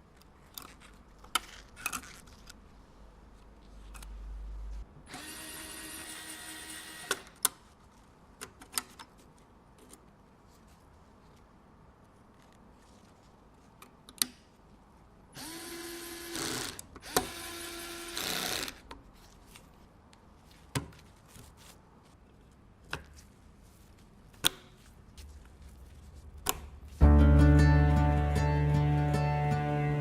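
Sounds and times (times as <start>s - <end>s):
electric screwdriver whirring: 15.4s - 18.8s
music: 27.0s - 30.0s.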